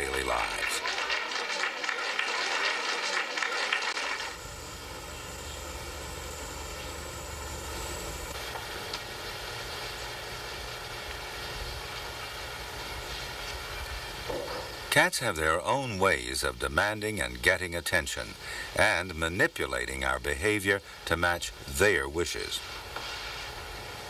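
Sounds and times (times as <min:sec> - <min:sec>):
machine drone: 0:03.9 - 0:15.0.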